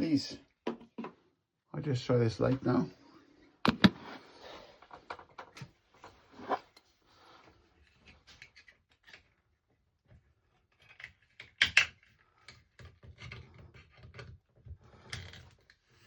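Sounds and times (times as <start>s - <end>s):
small clicks and knocks: 10.0s - 15.9s.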